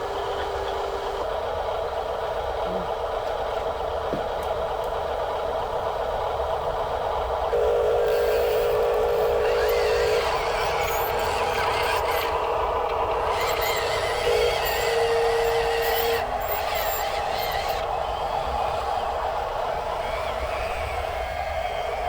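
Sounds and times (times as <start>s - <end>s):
steady hum: 7.5s - 19.9s
mechanical whirr: 7.5s - 22.0s
small electric motors whining: 7.5s - 22.0s.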